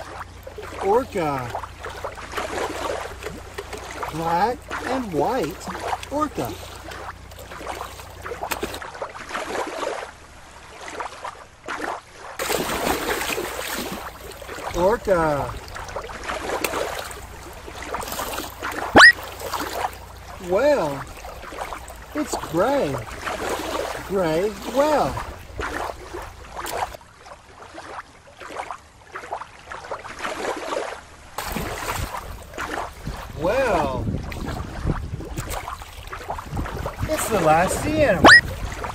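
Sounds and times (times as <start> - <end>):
shallow water sloshing: 0.0 - 38.9
small waves washing in: 0.0 - 38.9
wind on microphone: 33.0 - 38.9.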